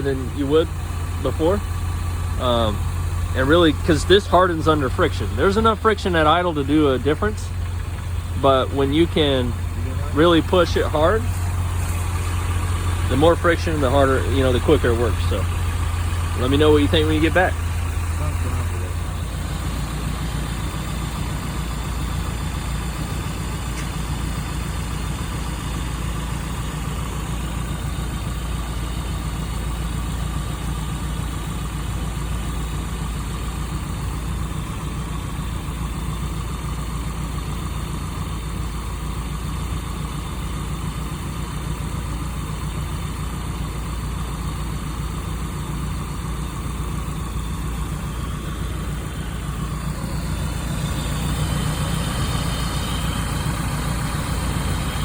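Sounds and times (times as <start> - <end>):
engine idling: 0.0 - 55.0.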